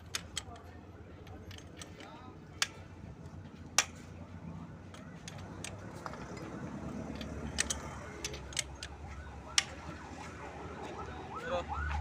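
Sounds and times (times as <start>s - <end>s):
sharp metallic clicks and taps: 0.0s - 4.1s, 4.8s - 9.9s
siren wailing: 8.9s - 12.0s.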